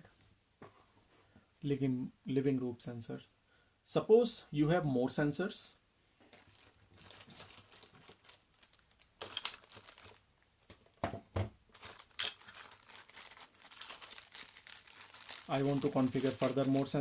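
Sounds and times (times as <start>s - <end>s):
packaging crinkling: 6.3s - 10.3s, 11.7s - 17.0s.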